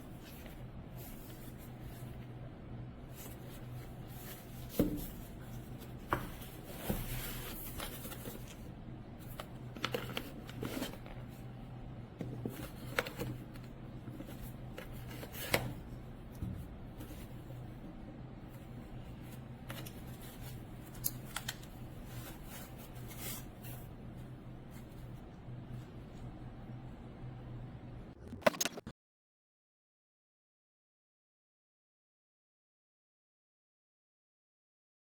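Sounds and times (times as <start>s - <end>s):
steady low hum: 0.0s - 28.3s.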